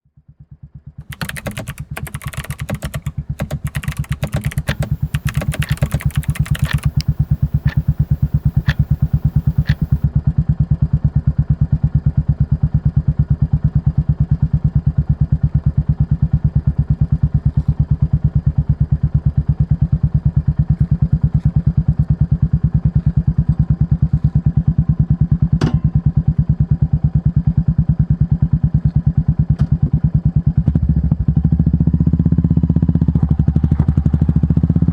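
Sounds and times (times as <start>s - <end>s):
clicks and clatter: 1.0s - 10.0s.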